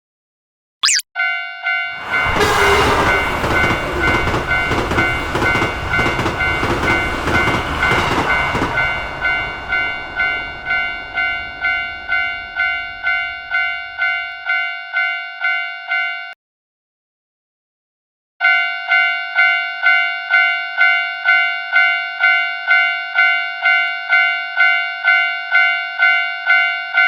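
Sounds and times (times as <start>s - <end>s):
railroad crossing bell ringing: 1.2s - 16.4s, 18.4s - 27.0s
train rushing past: 2.1s - 12.8s.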